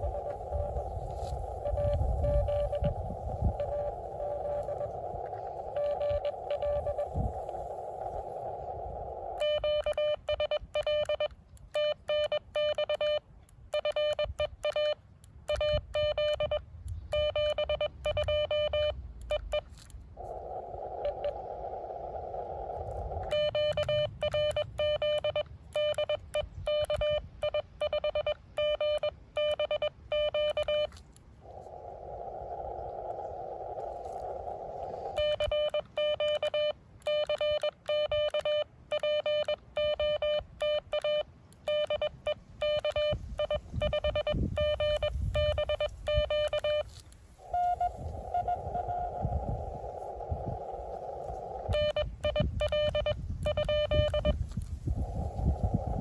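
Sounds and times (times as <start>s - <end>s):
morse code beeps: 0.0s - 8.6s, 9.3s - 19.8s, 23.2s - 31.0s, 35.0s - 49.8s, 51.4s - 56.0s
radio band hiss: 0.0s - 10.1s.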